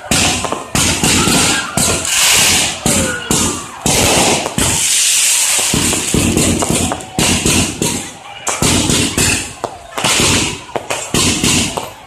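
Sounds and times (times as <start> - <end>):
fireworks bangs: 0.0 - 12.0
hissing crackle: 0.1 - 8.0.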